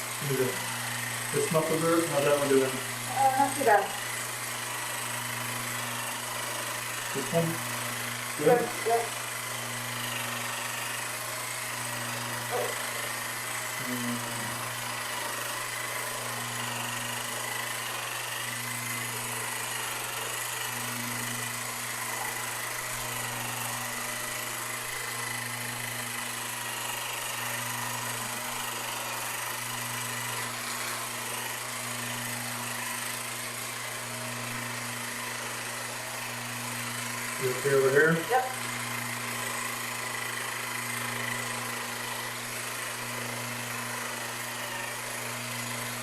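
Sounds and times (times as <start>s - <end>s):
electric massager motor hum: 0.0s - 46.0s.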